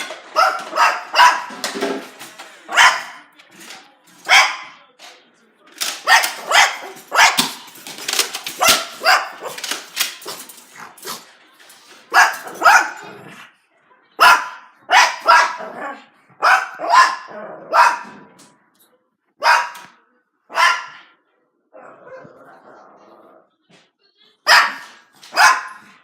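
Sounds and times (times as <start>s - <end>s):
dog barking: 0.4s - 1.6s, 2.7s - 3.2s, 4.3s - 4.8s, 6.0s - 7.6s, 8.6s - 9.6s, 12.1s - 13.0s, 14.2s - 18.1s, 19.4s - 21.1s, 24.5s - 26.0s.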